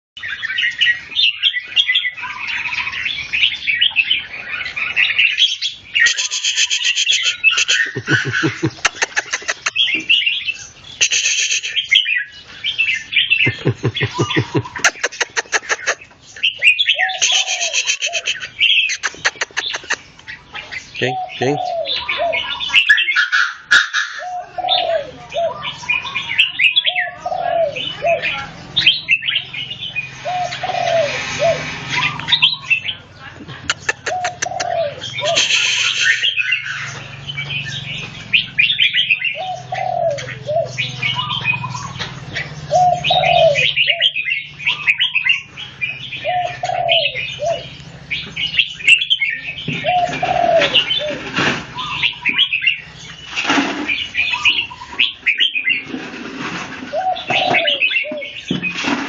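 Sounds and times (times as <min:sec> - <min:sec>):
birds singing chirping phrases: 0:00.2 - 0:59.0
brief noisy bursts: 0:11.0 - 0:11.8, 0:35.4 - 0:36.2.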